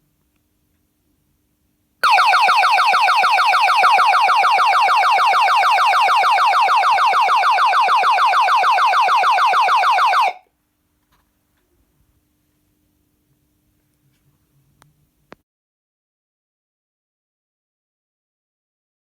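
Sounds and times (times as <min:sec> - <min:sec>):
electronic alarm siren: 0:02.0 - 0:10.4.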